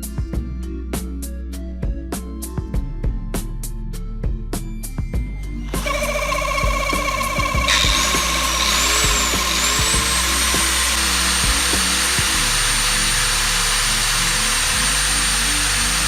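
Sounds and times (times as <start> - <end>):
electric motor running: 5.7 - 16.0
high motor whine: 5.7 - 16.0.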